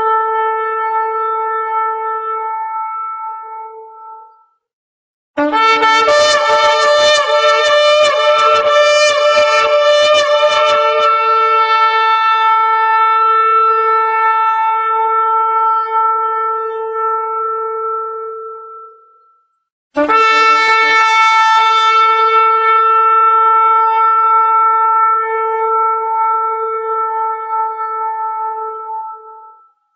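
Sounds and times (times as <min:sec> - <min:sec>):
ram's horn long blast: 0:05.4 - 0:19.2, 0:20.0 - 0:29.7.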